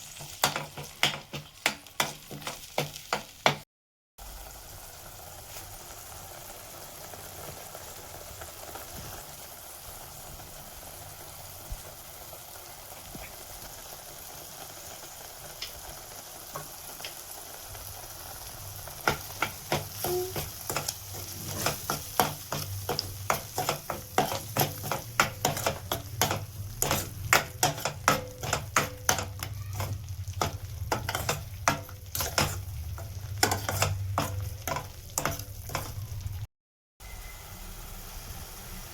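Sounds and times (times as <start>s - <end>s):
food sizzling in a pan: 0.0s - 3.6s, 4.2s - 38.9s
utensil scraping a pan: 19.1s - 36.2s.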